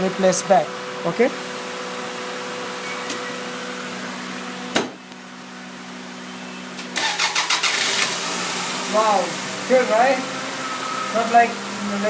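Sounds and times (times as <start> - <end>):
car engine cranking and starting: 6.8 - 11.9.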